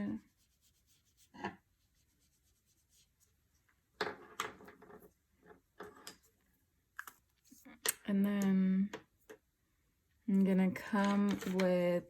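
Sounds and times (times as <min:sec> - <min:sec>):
brush scratching on paper: 0:00.0 - 0:03.5.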